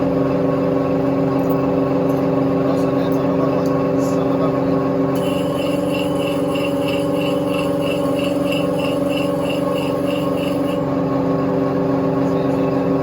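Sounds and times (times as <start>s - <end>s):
faint high pulsing: 5.2s - 11.0s
sharpening machine motor hum: 5.2s - 11.0s.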